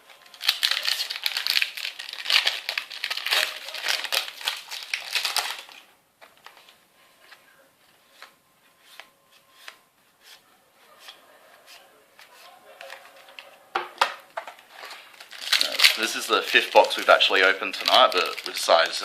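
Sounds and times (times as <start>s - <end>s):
plastic packaging crinkling and tearing: 0.0s - 6.7s, 14.7s - 19.0s.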